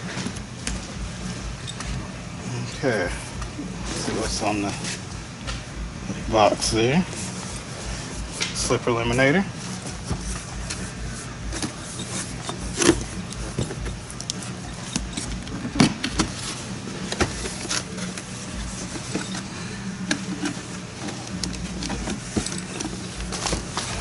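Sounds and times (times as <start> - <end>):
cardboard box and parts rustling: 9.7 - 19.5, 20.1 - 24.0.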